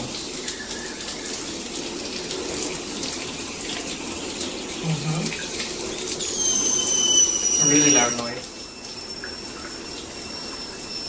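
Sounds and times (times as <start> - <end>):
water hissing through shower head: 4.8 - 11.0.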